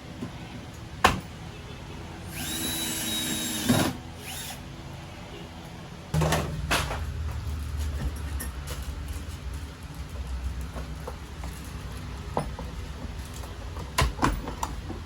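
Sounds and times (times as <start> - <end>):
power drill whining: 2.3 - 4.6.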